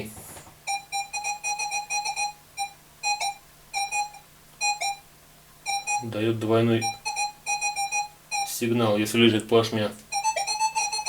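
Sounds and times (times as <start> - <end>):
metal detector beeps: 5.7 - 6.2, 6.8 - 8.6, 10.1 - 11.0.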